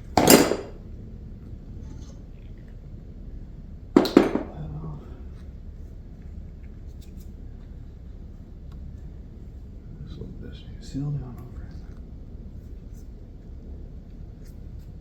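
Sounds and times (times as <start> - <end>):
steady low hum: 0.0 - 15.0
hand tool knocking on metal: 4.0 - 4.6.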